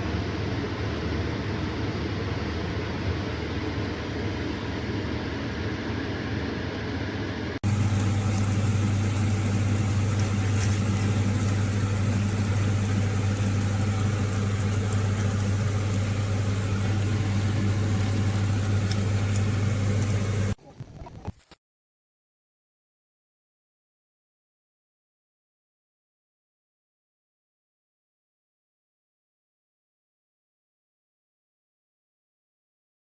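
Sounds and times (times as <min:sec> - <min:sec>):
mechanical hum: 0:00.0 - 0:21.6.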